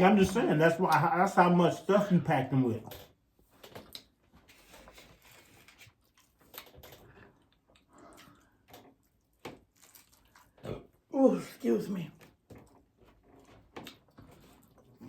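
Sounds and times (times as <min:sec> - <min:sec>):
food handling clicks and rustles: 0:02.8 - 0:10.6, 0:12.1 - 0:15.0.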